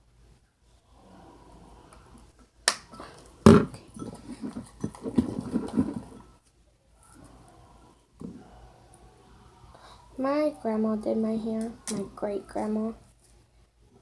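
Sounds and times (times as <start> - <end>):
handling noise on a table: 2.8 - 7.4.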